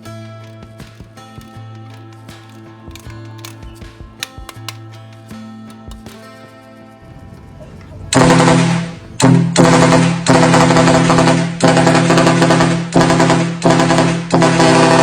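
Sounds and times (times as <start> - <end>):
truck air horn blasts: 7.6 - 15.0.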